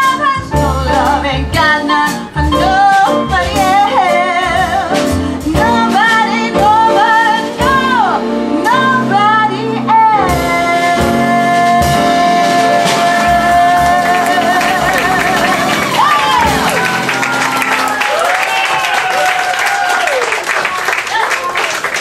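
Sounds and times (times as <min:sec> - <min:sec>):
woman singing jazz ballad: 0:00.0 - 0:17.1
instrumental backing: 0:00.0 - 0:19.2.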